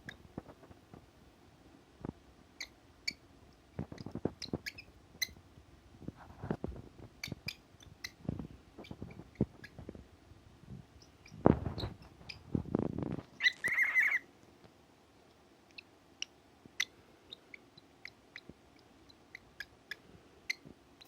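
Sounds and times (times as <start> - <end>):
cockatiel clicks and squeaks: 2.6 - 3.2, 3.8 - 5.4, 7.2 - 8.2, 13.4 - 14.2, 15.7 - 20.6.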